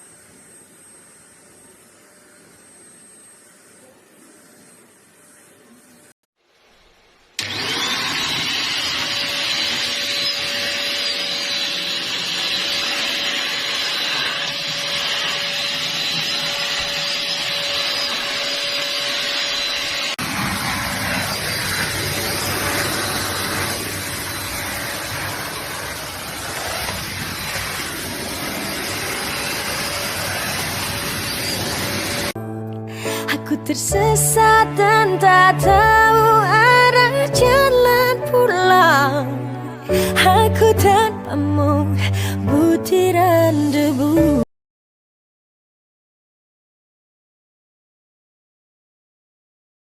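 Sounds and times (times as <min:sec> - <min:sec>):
handheld vacuum cleaner whining: 0:07.4 - 0:32.4.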